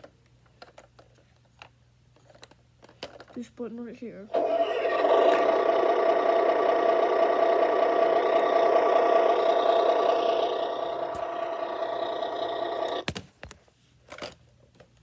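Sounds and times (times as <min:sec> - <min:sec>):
toy electronic engine sound: 0:04.3 - 0:13.1.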